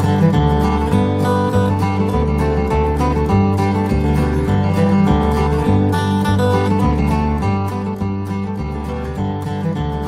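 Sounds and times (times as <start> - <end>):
steady bass line: 0.0 - 10.0
strummed acoustic guitar: 0.0 - 10.0.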